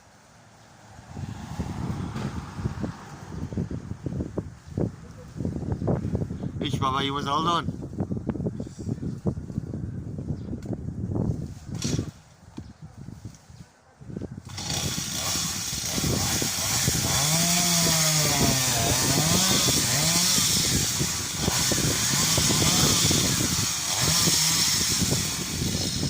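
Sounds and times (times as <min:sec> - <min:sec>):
man calling out: 0:06.6 - 0:07.7
chainsaw running: 0:14.4 - 0:26.0.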